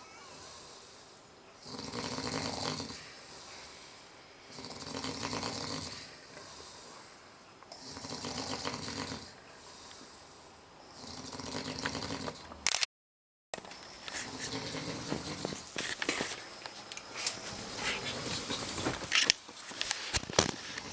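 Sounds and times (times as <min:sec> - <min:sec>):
rattling snores: 0:00.0 - 0:03.5, 0:04.5 - 0:07.0, 0:07.7 - 0:10.1, 0:10.9 - 0:12.6, 0:14.2 - 0:15.8.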